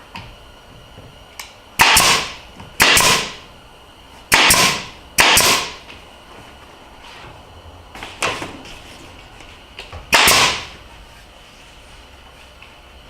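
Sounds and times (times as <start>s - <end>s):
nail gun firing: 1.8s - 3.4s, 4.3s - 5.8s, 10.1s - 10.7s.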